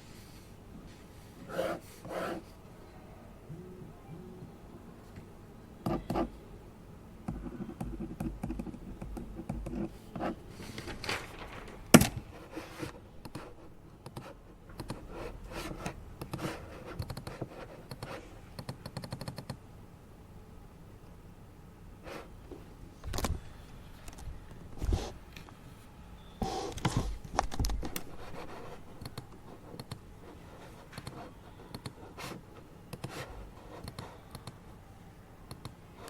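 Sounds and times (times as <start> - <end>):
keyboard typing: 7.3 - 9.9, 13.2 - 15.1, 15.8 - 19.6, 26.4 - 30.0, 30.9 - 32.0, 32.9 - 34.6, 35.5 - 35.8.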